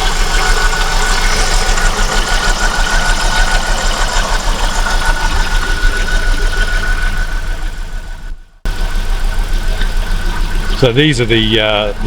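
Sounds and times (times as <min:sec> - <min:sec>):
car engine idling: 0:00.0 - 0:12.0
thin steady whine: 0:00.0 - 0:12.0.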